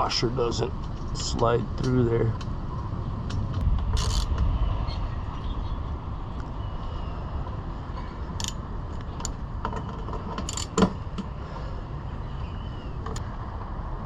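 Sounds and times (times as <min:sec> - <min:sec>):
low rumble: 0:01.0 - 0:09.6
metal bolt hardware clicking: 0:09.2 - 0:10.9.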